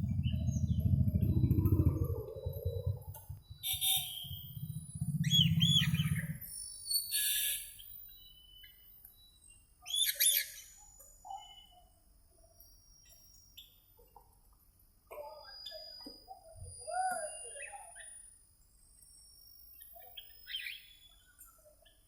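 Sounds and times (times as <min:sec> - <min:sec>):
low rattling drone: 0:00.0 - 0:03.4, 0:04.4 - 0:06.5.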